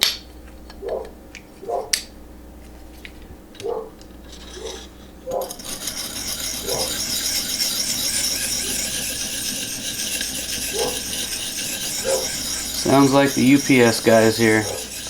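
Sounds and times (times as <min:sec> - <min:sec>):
dog barking: 0:00.8 - 0:01.9, 0:03.6 - 0:03.9
knife scraping on sharpening stone: 0:04.3 - 0:15.0.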